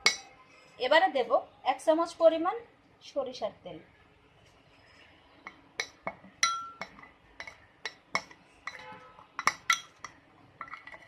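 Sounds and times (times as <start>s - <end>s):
spoon tapping against bowl: 0.0s - 0.3s, 5.8s - 11.0s.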